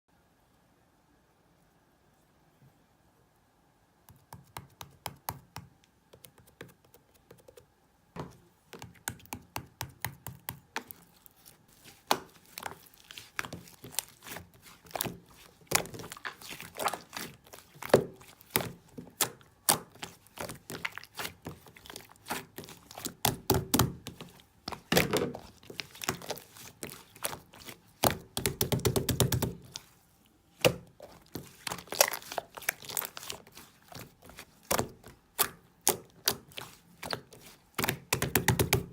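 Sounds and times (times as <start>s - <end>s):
slime squelching: 8.2s - 38.9s.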